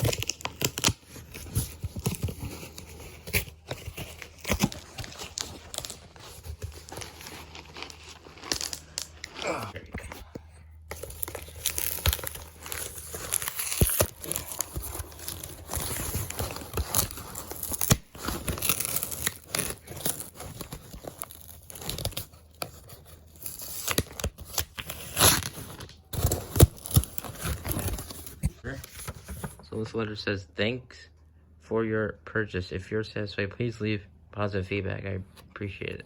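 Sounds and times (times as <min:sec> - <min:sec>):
paper tearing and crinkling: 0:00.0 - 0:09.8, 0:10.8 - 0:29.6.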